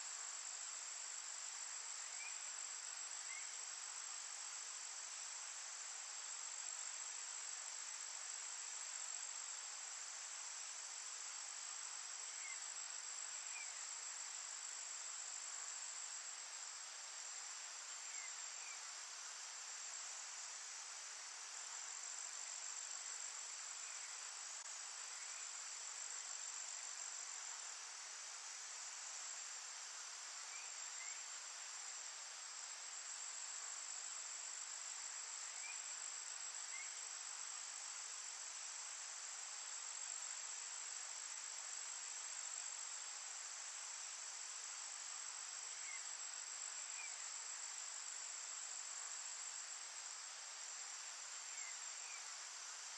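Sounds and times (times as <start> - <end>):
insect high trill: 51.5 - 52.3.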